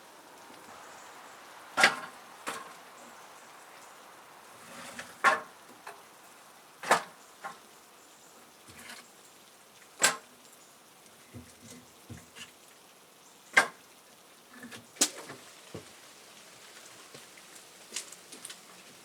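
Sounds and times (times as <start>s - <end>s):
knocks and taps of objects handled: 11.3s - 12.5s.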